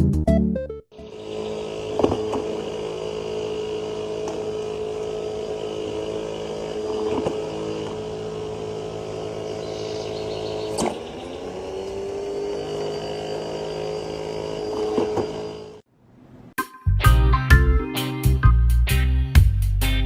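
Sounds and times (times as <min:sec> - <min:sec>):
steady machine hum: 0:00.9 - 0:15.9.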